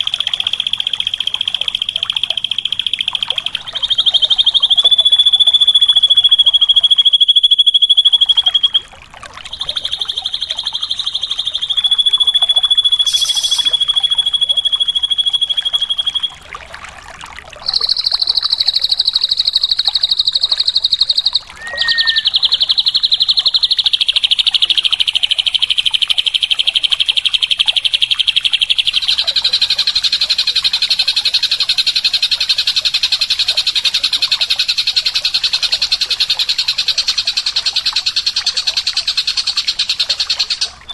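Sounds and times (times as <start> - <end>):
bird singing buzzy trills: 0.0 - 16.4, 17.7 - 32.5, 34.1 - 40.9.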